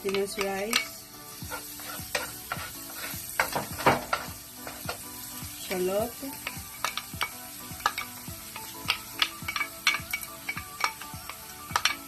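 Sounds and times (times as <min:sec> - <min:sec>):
utensil scraping a pan: 0:00.0 - 0:05.0
garlic sizzling in hot oil: 0:00.0 - 0:12.0.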